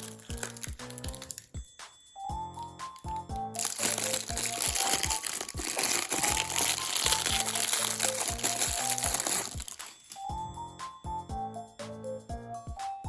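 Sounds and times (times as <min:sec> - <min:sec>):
plastic packaging crinkling: 0:00.0 - 0:01.5, 0:03.0 - 0:10.3
light background music: 0:00.0 - 0:13.0.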